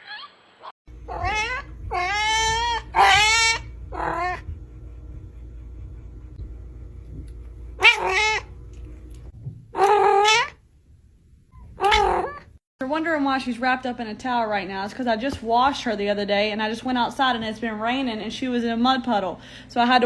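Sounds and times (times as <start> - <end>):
low steady hum: 0.9 - 20.0
cat yowling: 1.1 - 4.5, 7.8 - 8.5, 9.8 - 10.6, 11.8 - 12.5.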